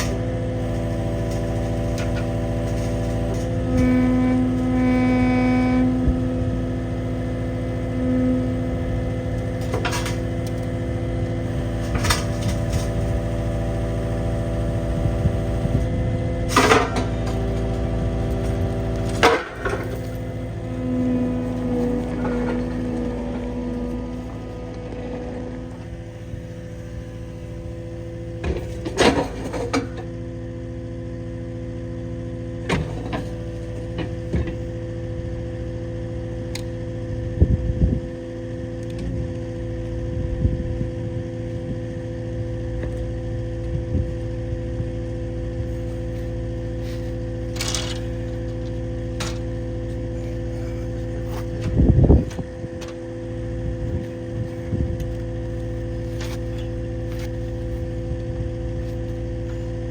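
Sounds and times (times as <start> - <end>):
engine idling: 0.0 - 59.9
metal clanks and knocks: 11.4 - 26.0, 46.8 - 53.0.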